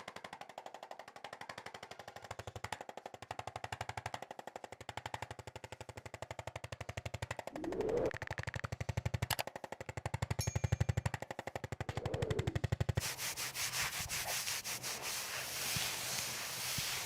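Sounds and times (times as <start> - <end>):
handheld percussion tapping: 10.4 - 11.2.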